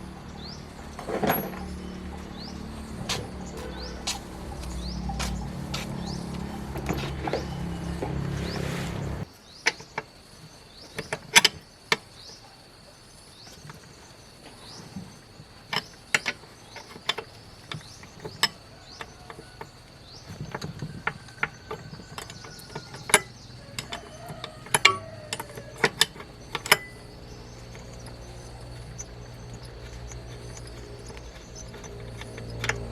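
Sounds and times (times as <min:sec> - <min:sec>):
metallic clicks of hand tools: 0:20.5 - 0:32.9.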